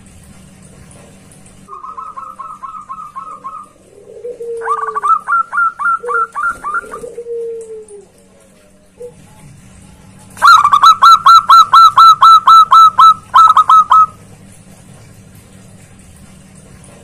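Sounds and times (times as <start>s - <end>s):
dove calling: 1.7s - 8.2s, 10.4s - 14.2s.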